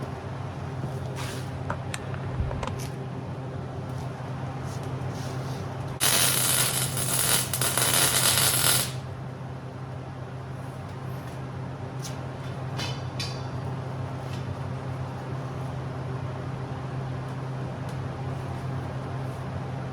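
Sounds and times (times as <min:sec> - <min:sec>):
power tool hissing on steel: 0:06.0 - 0:09.0.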